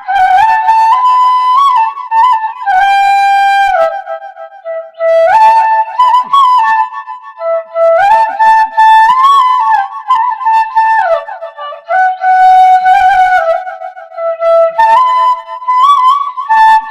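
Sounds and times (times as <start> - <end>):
bamboo flute slow melody: 0.0 - 16.9.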